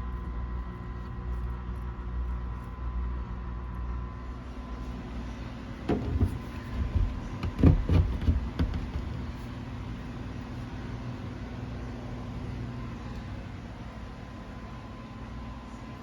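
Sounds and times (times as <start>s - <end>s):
steady low hum: 0.0s - 16.0s
knocks and rustling handling: 5.8s - 9.6s.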